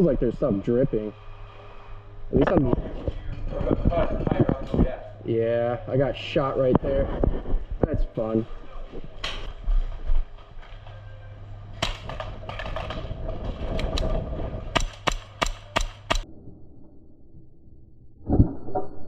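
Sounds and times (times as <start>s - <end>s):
airsoft gun shots: 11.8s - 12.8s, 14.7s - 16.2s.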